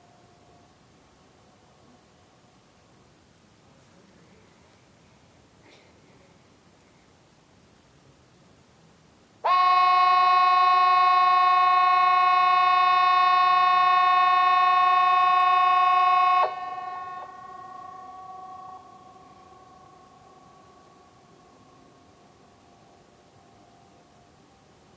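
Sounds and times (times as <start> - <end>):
outdoor warning siren: 9.4 - 24.9.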